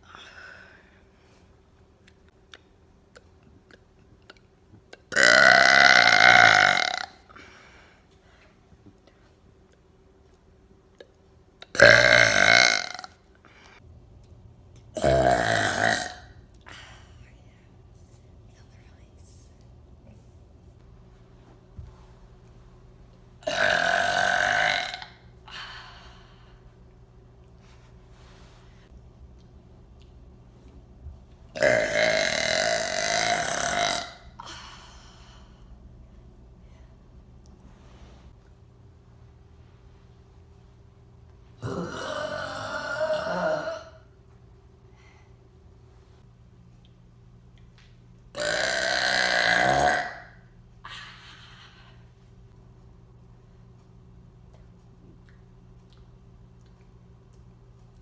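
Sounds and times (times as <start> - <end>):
woman burping: 5.0 - 7.4, 11.7 - 13.2, 15.0 - 16.4, 23.4 - 25.3, 31.6 - 34.8, 41.6 - 44.1, 48.3 - 51.2
breathy sound: 34.4 - 35.8.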